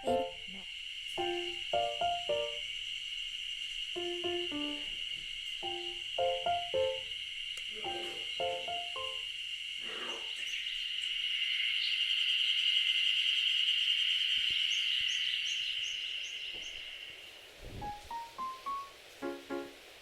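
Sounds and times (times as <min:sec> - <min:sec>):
cicadas droning: 0:00.0 - 0:20.0
rising musical notes: 0:04.0 - 0:05.0, 0:05.6 - 0:07.1, 0:07.9 - 0:09.2, 0:17.8 - 0:20.0
bird chirping: 0:09.9 - 0:17.3.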